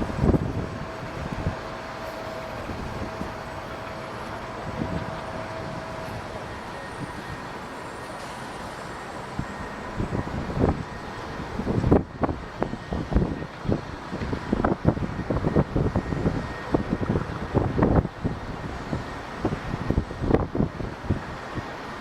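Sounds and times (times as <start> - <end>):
wind buffeting microphone: 0.0 - 7.6, 9.3 - 22.0
faint held whine: 0.0 - 22.0
jet and airport rumble: 0.0 - 22.0.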